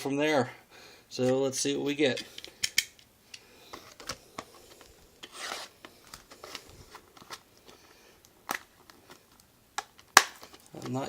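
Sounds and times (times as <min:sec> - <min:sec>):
cardboard packaging rustling: 0:03.7 - 0:11.0.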